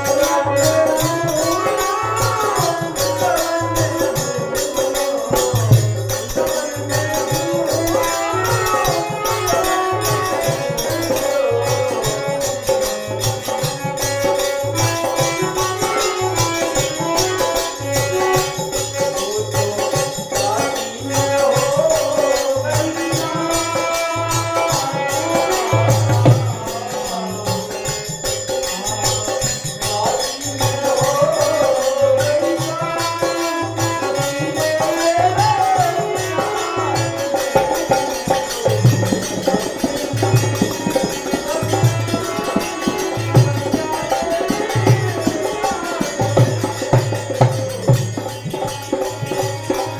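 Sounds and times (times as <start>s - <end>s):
jingling hand percussion: 0.0s - 49.9s
low hand drum beat: 37.9s - 48.7s.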